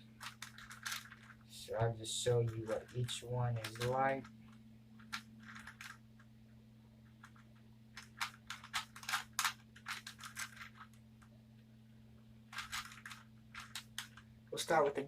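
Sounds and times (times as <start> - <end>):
steady low hum: 0.0 - 15.0
plastic puzzle cube clacking: 0.2 - 1.4, 2.4 - 4.0, 5.0 - 6.0, 7.2 - 11.0, 12.5 - 14.2.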